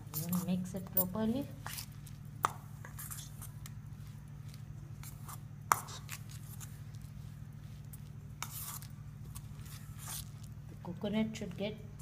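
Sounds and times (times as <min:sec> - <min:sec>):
spoon scraping in bowl: 0:02.9 - 0:03.6, 0:08.4 - 0:10.5.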